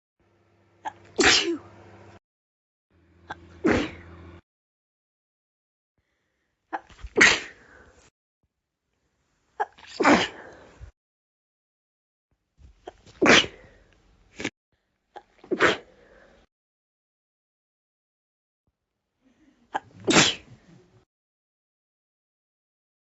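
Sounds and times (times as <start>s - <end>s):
person sneezing: 0.8s - 1.7s, 3.3s - 4.1s, 6.8s - 7.8s, 9.6s - 10.6s, 12.9s - 13.8s, 15.2s - 15.9s, 19.4s - 20.8s.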